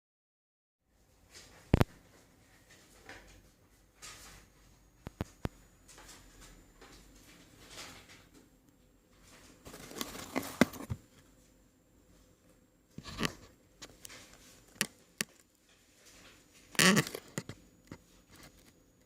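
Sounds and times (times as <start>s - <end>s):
rustling of handled object: 9.2s - 11.5s.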